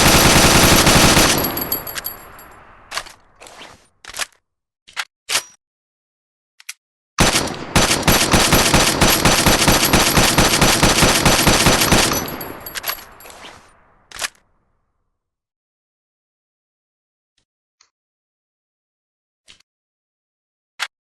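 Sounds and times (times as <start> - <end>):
automatic gunfire: 0.0 - 2.6, 7.2 - 13.3.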